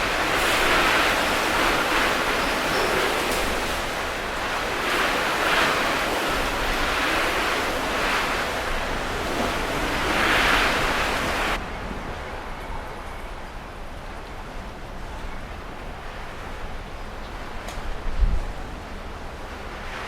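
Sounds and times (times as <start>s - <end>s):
strong wind gusting: 0.0s - 20.0s.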